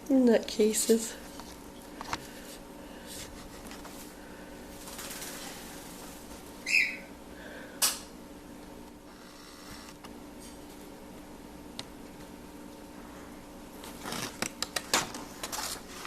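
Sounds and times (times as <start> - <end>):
steady low hum: 0.0 - 16.0
parrot call: 6.6 - 7.1.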